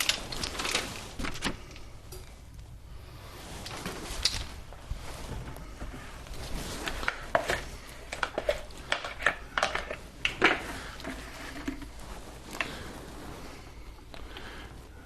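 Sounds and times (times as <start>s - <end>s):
kitchen utensils clinking: 6.8s - 12.0s.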